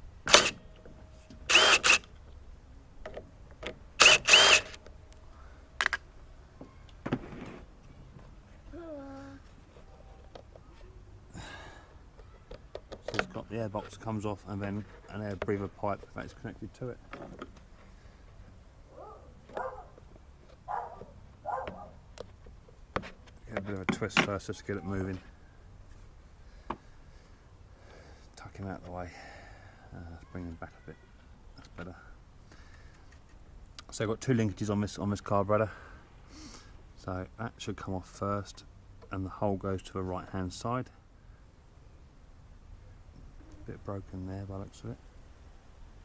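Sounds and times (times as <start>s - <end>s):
cordless power driver whirring: 0.3s - 0.6s, 1.4s - 2.1s, 4.0s - 4.8s.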